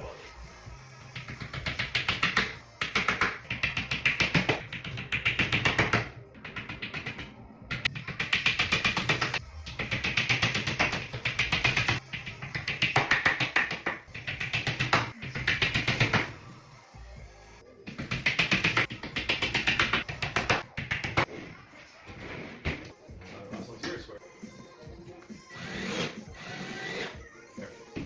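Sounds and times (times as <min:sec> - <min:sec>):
music with fast beat: 0:00.0 - 0:21.4.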